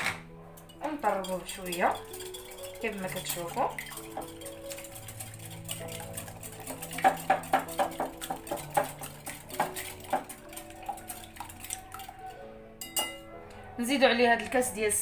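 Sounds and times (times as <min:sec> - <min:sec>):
utensil clicking against bowl: 0:01.7 - 0:12.2.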